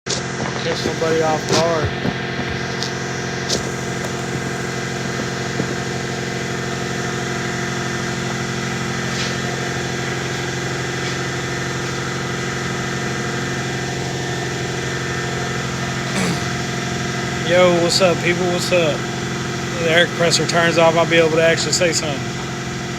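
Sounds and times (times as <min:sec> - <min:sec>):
air compressor running: 0:00.2 - 0:22.9.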